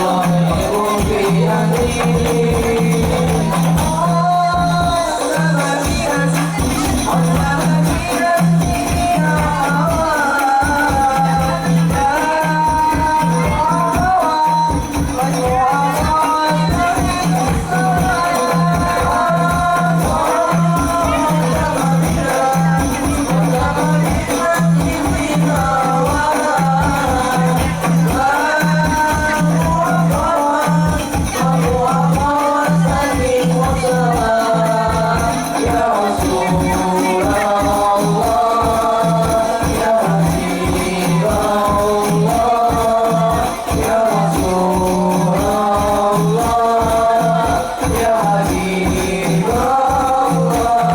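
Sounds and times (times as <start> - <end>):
frame drums: 0.0 - 50.9
voices singing: 0.0 - 50.9.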